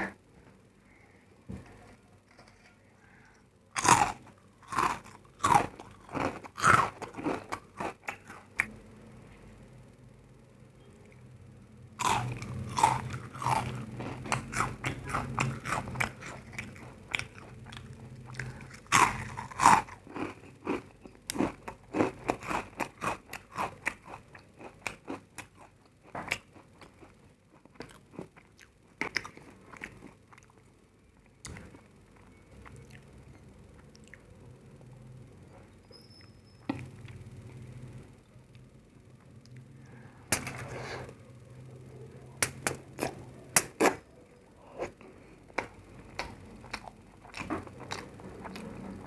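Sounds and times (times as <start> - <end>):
person chewing crunchy food: 3.7 - 8.7, 12.0 - 30.7, 44.6 - 49.0.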